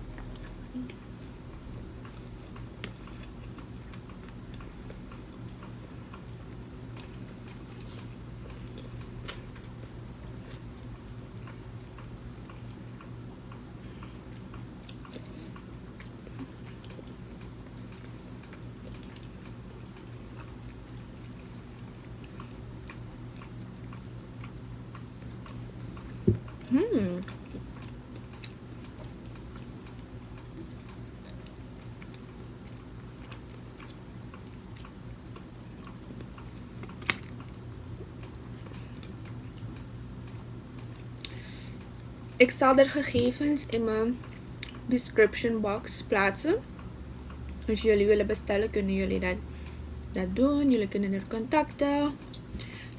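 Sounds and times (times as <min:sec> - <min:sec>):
steady low hum: 0:00.0 - 0:52.9
person chewing: 0:01.8 - 0:42.1, 0:44.2 - 0:44.9.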